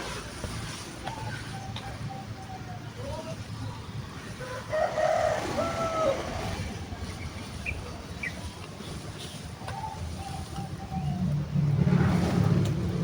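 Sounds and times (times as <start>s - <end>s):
wind rumble on microphone: 0.0s - 13.0s
distant wavering call: 1.0s - 3.4s, 4.2s - 8.5s, 9.3s - 11.5s.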